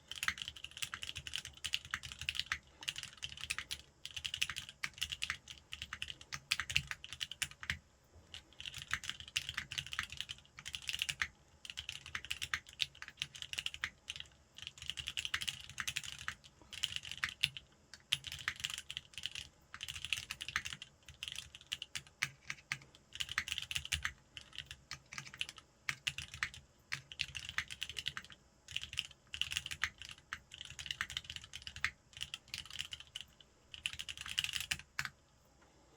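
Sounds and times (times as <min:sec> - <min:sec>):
mechanical keyboard typing: 0:00.0 - 0:35.2.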